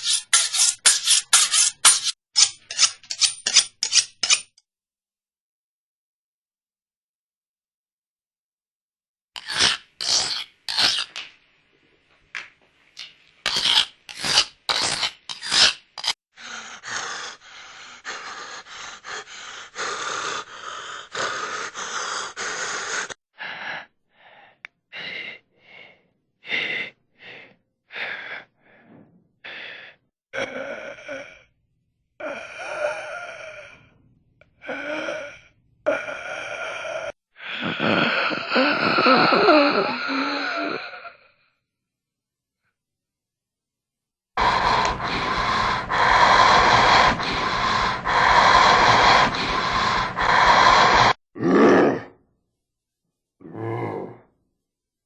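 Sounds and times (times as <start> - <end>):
person gasping and breathing: 16.3 - 31.5, 34.6 - 41.4, 44.4 - 52.2
person groaning: 44.4 - 52.2, 53.4 - 54.3.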